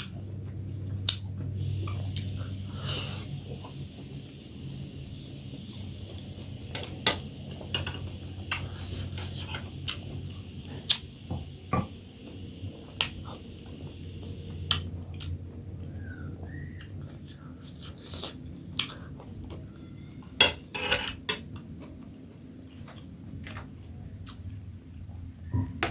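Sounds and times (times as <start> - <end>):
steady low hum: 0.0 - 20.7.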